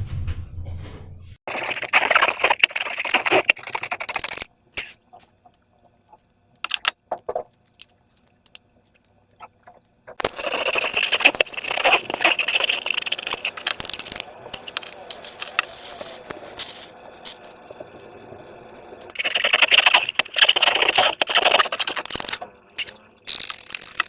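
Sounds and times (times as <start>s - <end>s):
sharp clicks and ticks: 1.5s - 4.5s, 9.4s - 18.2s, 19.0s - 24.0s.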